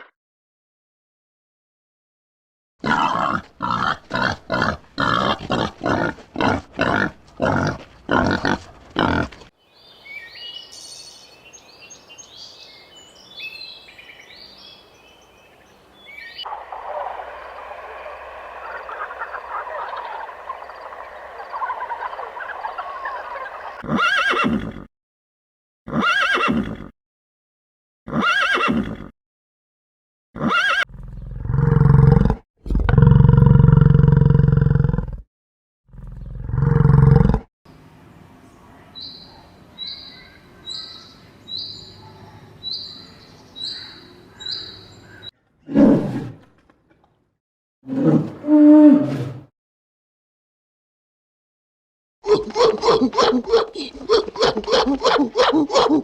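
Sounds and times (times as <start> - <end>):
loud animal calls: 2.8 - 9.4, 16.4 - 24.6, 52.3 - 56.0
high chirping: 16.0 - 23.8.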